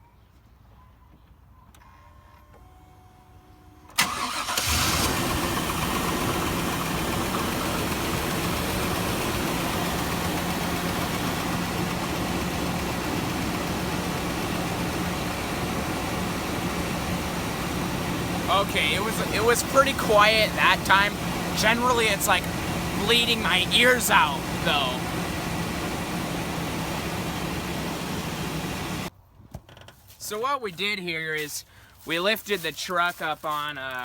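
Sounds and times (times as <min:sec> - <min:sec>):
truck engine starting and idling: 0:02.8 - 0:29.1
engine knocking and ticking: 0:04.1 - 0:29.1.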